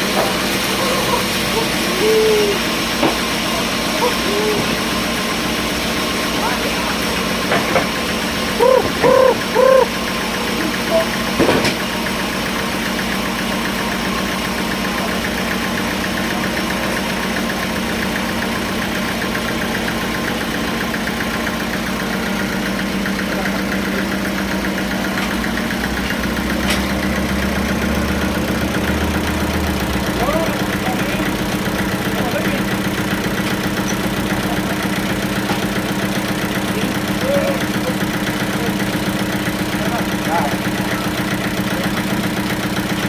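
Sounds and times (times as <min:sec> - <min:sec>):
sawmill engine droning: 0:00.0 - 0:43.0
short hoot-like tones: 0:08.6 - 0:10.0.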